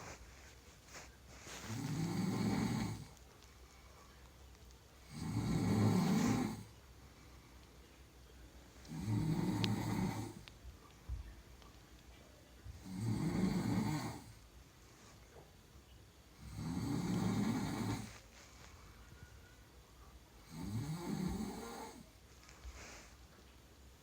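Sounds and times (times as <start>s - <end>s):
quiet breaths: 0.0s - 24.0s
person snoring: 1.6s - 3.1s, 5.0s - 6.7s, 8.9s - 10.4s, 12.8s - 14.4s, 16.4s - 18.2s, 20.4s - 22.0s.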